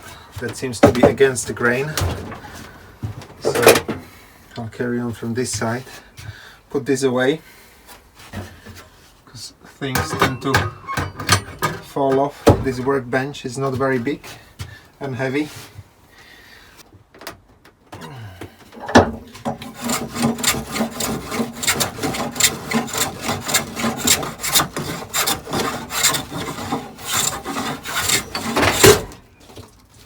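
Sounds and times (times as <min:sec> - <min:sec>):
hand plane shaving a board: 0:19.6 - 0:29.1.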